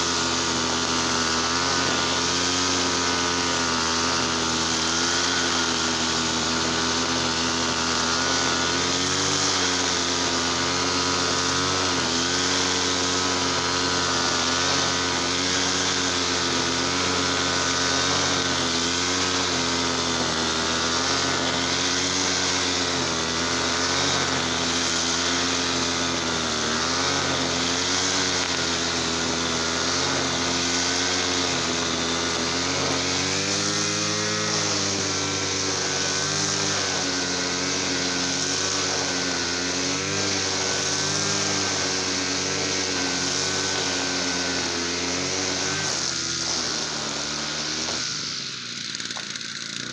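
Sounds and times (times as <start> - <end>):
brush cutter engine running: 0.0 - 49.9.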